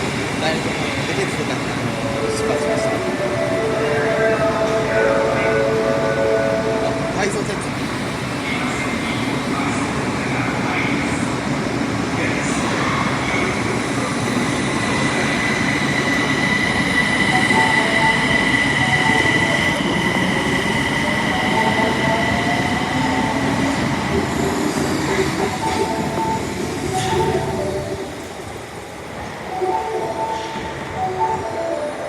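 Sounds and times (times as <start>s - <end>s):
high-pitched train squeal: 14.8s - 28.1s.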